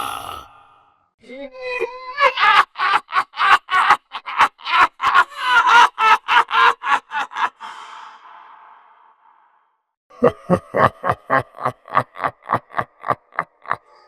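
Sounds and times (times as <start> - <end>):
ghost voice laughing: 2.2 - 8.5, 10.1 - 14.0.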